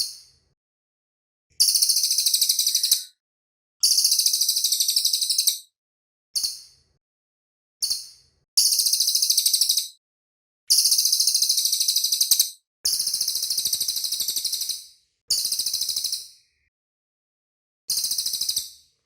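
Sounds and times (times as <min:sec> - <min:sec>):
songbird trilling: 0:01.7 - 0:03.2, 0:03.9 - 0:05.6, 0:08.6 - 0:09.9, 0:10.7 - 0:12.5.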